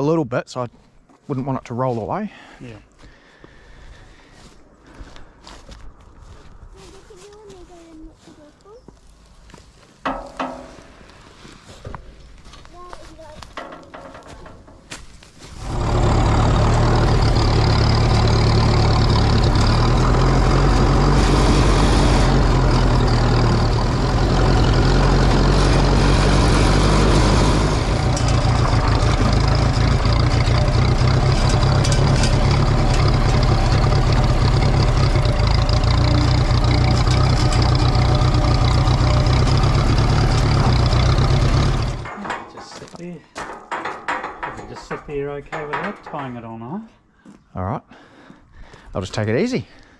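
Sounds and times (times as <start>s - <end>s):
tractor engine running: 9.2s - 46.5s.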